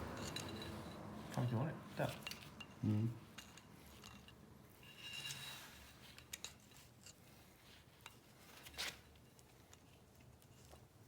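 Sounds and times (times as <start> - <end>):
metal engine parts scraping: 3.4 - 6.9.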